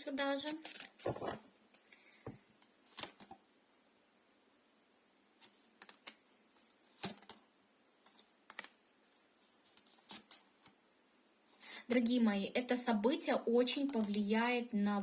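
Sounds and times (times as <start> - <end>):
cards laid on a table: 0.5 - 3.5, 5.4 - 8.8.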